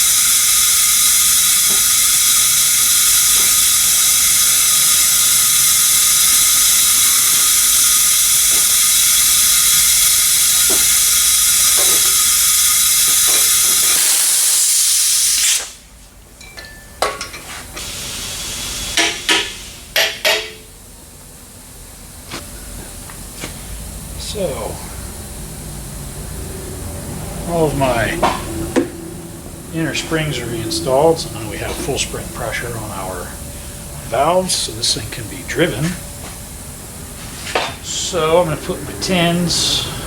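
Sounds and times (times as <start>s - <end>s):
compressed air hissing: 0.0s - 15.9s, 17.5s - 20.6s, 22.0s - 40.0s.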